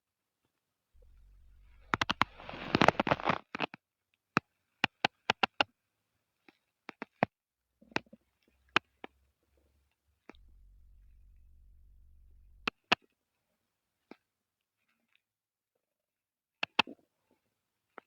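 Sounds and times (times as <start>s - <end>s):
stomach gurgling: 1.0s - 3.6s
stomach pops and clicks: 1.4s - 3.7s.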